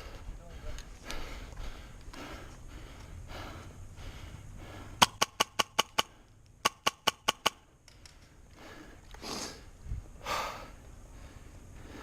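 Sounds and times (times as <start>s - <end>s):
airsoft gun shots: 5.0s - 7.6s.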